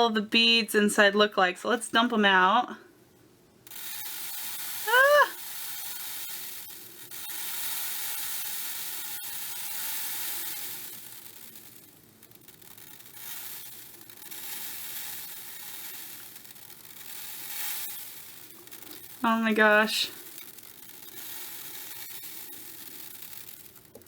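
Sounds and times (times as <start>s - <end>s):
plastic beads pouring into a tray: 3.7s - 24.0s.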